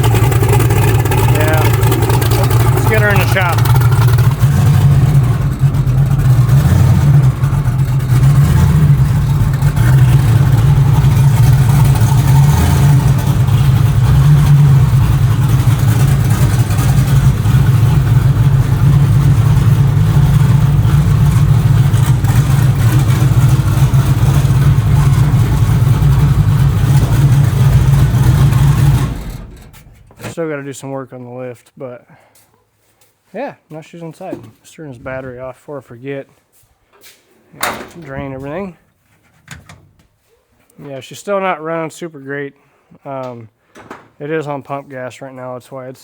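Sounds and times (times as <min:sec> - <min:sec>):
rough race car engine running: 0:00.0 - 0:30.2.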